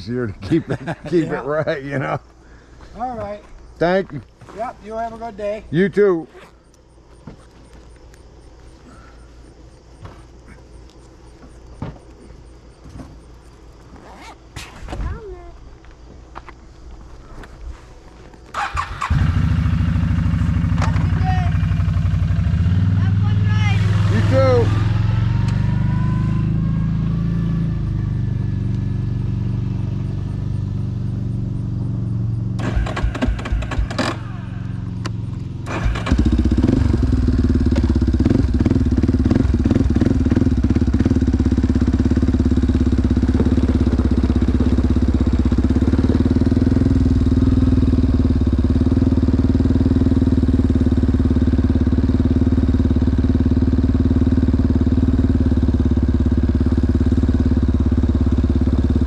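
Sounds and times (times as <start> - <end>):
atv engine running: 18.5 - 59.0.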